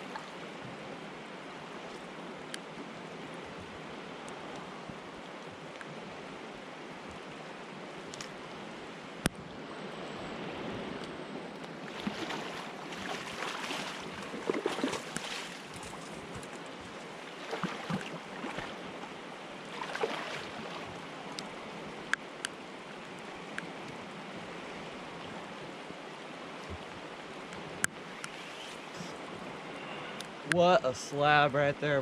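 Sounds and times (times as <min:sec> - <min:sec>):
river water rushing: 0:00.0 - 0:31.6
water splashing: 0:11.6 - 0:21.0.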